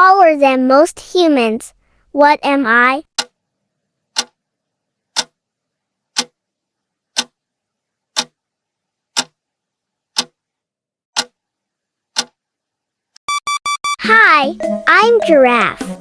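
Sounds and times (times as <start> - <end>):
clock ticking: 5.2 - 5.4.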